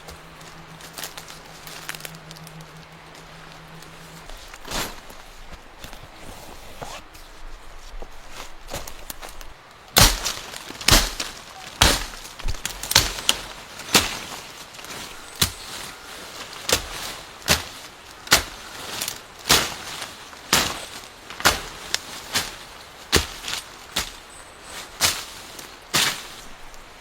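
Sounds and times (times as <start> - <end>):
wood being struck: 10.0 - 14.4.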